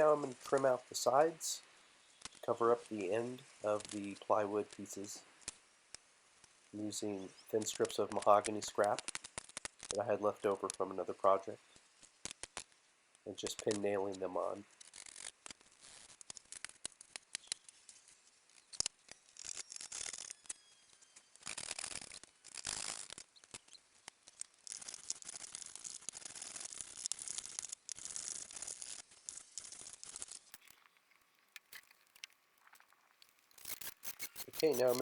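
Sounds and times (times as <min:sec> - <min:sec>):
hissing noise: 0:30.6 - 0:35.0.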